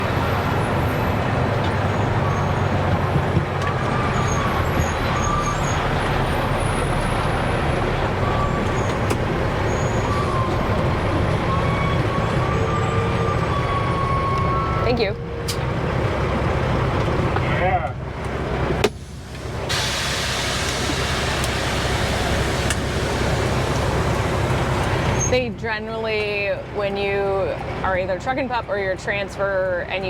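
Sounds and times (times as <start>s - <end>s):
diesel engine running: 0.0s - 30.0s.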